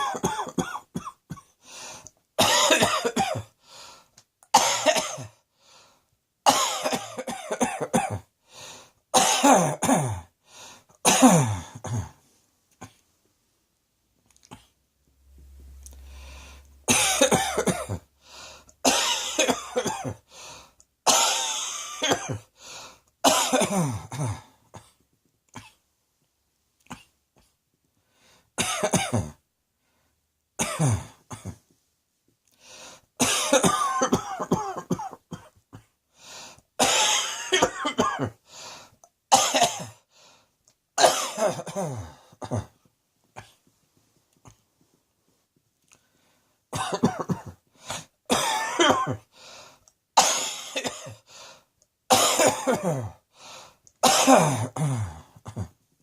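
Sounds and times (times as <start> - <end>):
person coughing: 0.0 - 1.6, 2.4 - 3.6, 4.5 - 5.4, 6.5 - 8.3, 9.2 - 10.3, 11.0 - 12.2, 16.9 - 18.1, 18.8 - 20.3, 21.1 - 22.5, 23.2 - 25.0, 28.6 - 29.4, 30.6 - 31.6, 33.2 - 35.9, 36.8 - 38.4, 39.3 - 40.0, 41.0 - 42.8, 46.8 - 49.3, 50.2 - 51.3, 52.1 - 53.2, 54.0 - 55.8.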